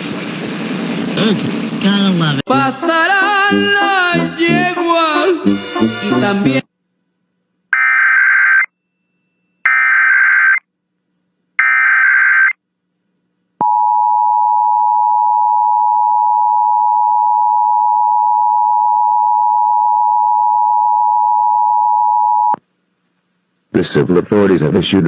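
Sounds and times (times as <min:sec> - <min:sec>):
screechy digital data tones: 0:07.8 - 0:08.7, 0:09.7 - 0:10.6, 0:11.6 - 0:12.6
two-tone alert alarm: 0:07.8 - 0:08.7, 0:09.7 - 0:10.6, 0:11.6 - 0:12.6.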